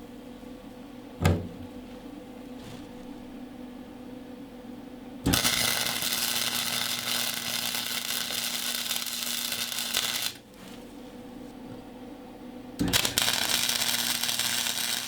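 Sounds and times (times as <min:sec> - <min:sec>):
low steady hum: 0:00.0 - 0:12.9
welder crackling sizzle: 0:05.3 - 0:10.8, 0:12.8 - 0:15.0.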